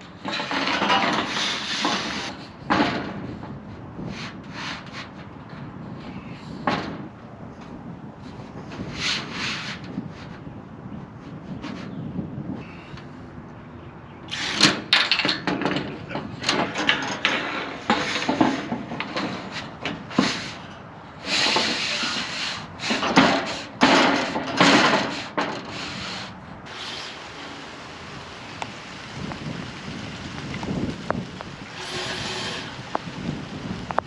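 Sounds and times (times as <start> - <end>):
building materials scraping and knocking: 0.0 - 7.1, 8.2 - 10.4, 14.3 - 28.0, 30.4 - 34.0
steady hiss: 25.9 - 34.0.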